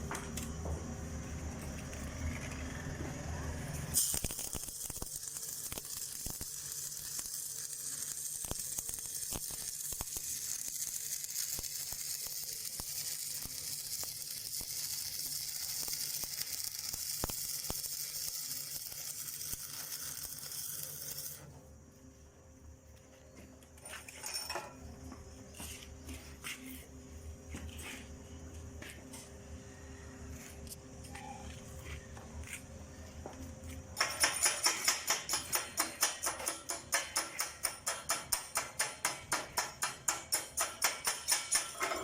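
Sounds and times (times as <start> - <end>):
welding arc crackling: 3.6 - 21.5.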